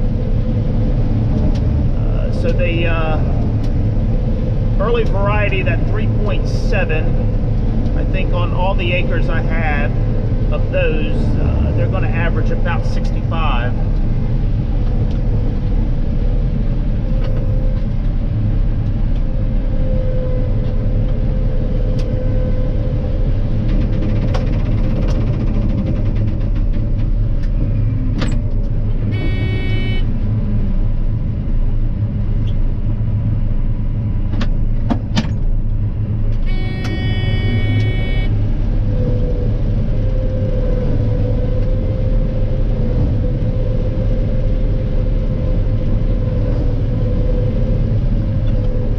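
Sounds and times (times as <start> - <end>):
combine harvester running: 0.0 - 48.9
short pitched tones: 29.1 - 30.1, 36.4 - 38.4.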